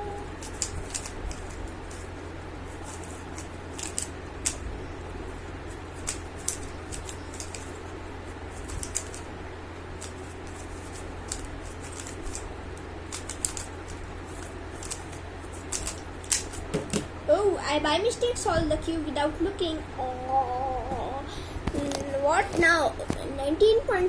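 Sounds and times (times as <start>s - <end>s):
low steady hum: 0.0s - 24.0s
plastic puzzle cube clicking: 0.4s - 1.4s, 3.8s - 4.6s, 6.1s - 7.7s, 13.1s - 13.7s, 15.7s - 16.6s.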